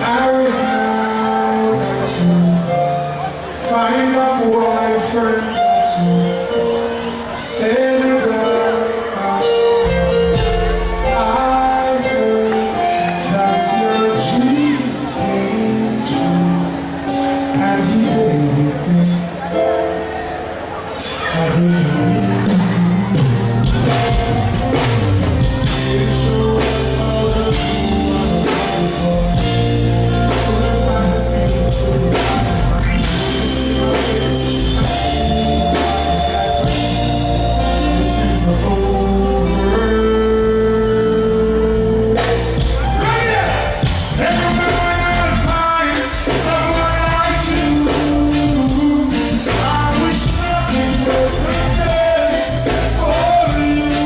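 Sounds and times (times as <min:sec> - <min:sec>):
person singing: 0:00.0 - 0:20.4, 0:21.0 - 0:54.0
live band music: 0:00.0 - 0:54.0
steady drum beat: 0:23.2 - 0:38.3, 0:42.2 - 0:54.0.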